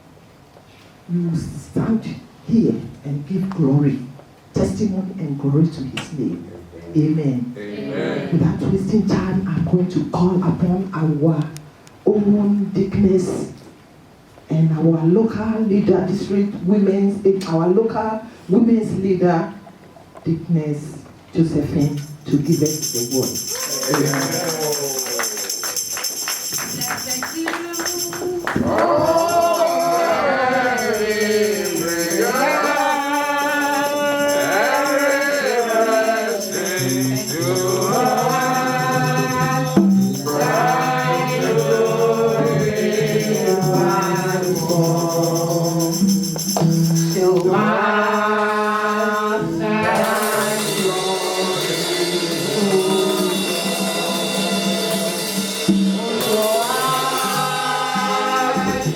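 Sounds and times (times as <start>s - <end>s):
tambourine shaking: 21.8s - 58.9s
voices singing gospel song: 26.2s - 58.9s.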